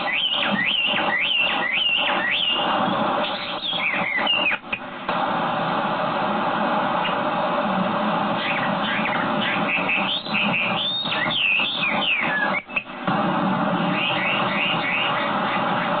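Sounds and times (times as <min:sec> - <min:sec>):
bird singing whistled phrases: 0:00.0 - 0:04.6, 0:08.4 - 0:12.9, 0:13.9 - 0:15.8
steady loud hiss: 0:00.0 - 0:16.0.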